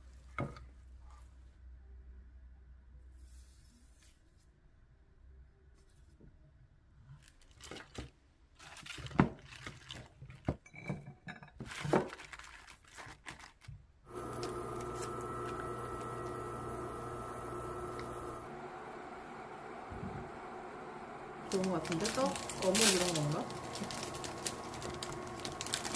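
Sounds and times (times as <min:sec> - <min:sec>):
dishes and utensils clinking: 0:10.6 - 0:11.7
kitchen appliance humming: 0:14.1 - 0:25.9.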